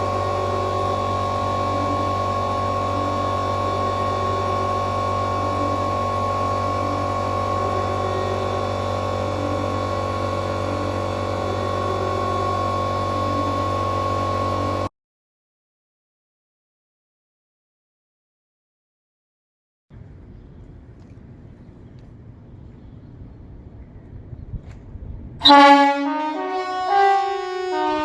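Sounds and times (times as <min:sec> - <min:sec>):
constant high whine: 0:00.0 - 0:14.9, 0:19.9 - 0:28.0
machine hum: 0:00.0 - 0:14.9, 0:25.4 - 0:28.0.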